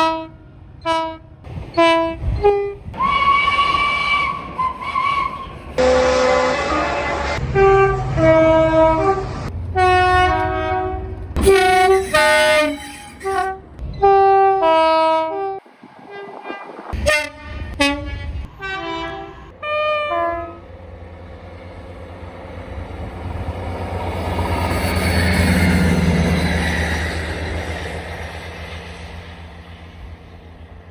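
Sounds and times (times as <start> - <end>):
train horn two-tone blasts: 0.0 - 20.7
train running rumble: 0.0 - 30.9.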